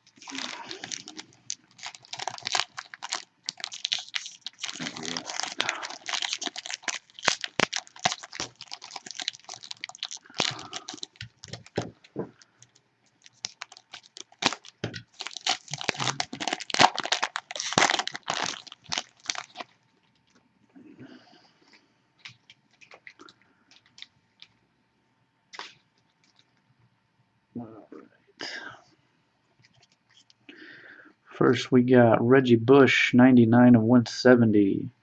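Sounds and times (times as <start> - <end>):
foil wrapper crinkling and tearing: 0.0 - 20.4.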